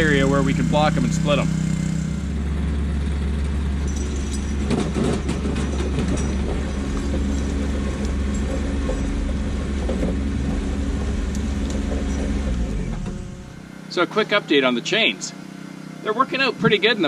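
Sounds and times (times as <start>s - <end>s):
tractor diesel engine running: 0.0s - 17.0s
engine knocking clatter: 2.7s - 12.8s.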